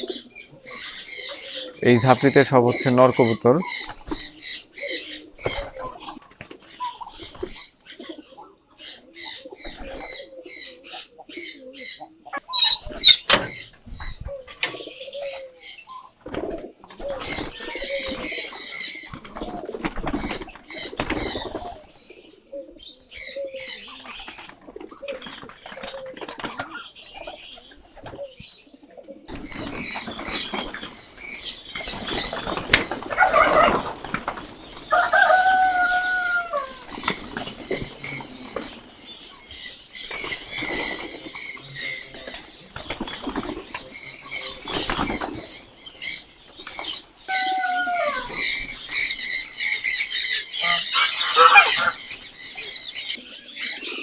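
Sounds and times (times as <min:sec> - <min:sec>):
pigeons cooing: 0:00.0 - 0:54.0
pigeon wings flapping: 0:19.1 - 0:21.8, 0:29.3 - 0:35.4.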